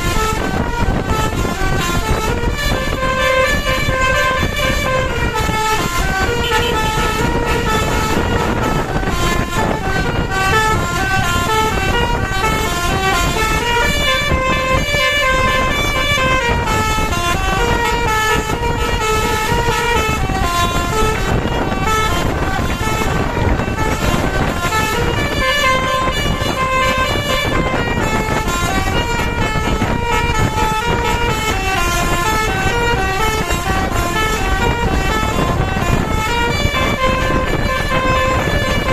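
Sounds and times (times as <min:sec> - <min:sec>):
multi-tone bus horn melody: 0:00.0 - 0:38.9.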